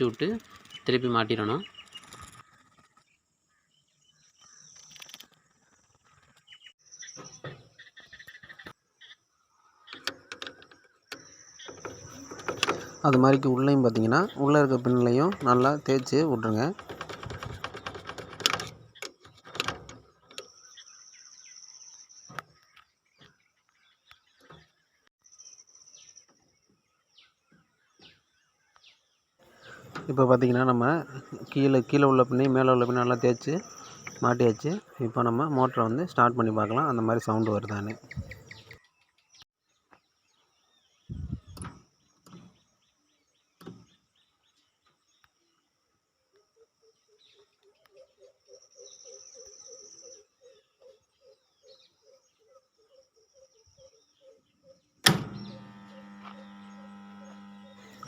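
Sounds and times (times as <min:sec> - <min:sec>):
faint bird chirps: 0:00.0 - 0:16.7, 0:20.1 - 0:58.0
clunks and knocks from handling: 0:10.0 - 0:20.5
sharp clicks: 0:14.2 - 0:20.5.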